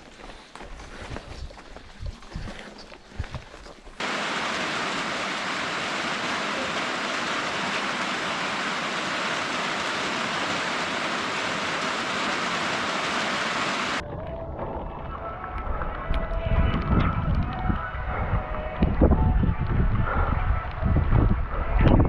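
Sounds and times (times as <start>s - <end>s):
heavy rain hissing: 4.0s - 14.0s.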